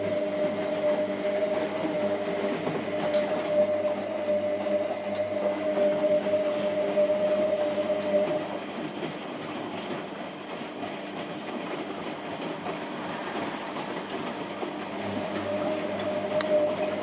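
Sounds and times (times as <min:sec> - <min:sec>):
washing machine motor whine: 0:00.0 - 0:17.0
washing machine running: 0:00.0 - 0:17.0.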